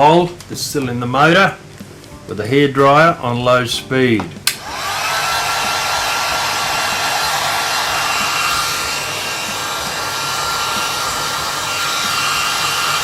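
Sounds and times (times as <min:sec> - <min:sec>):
hair dryer running: 0:04.5 - 0:13.0.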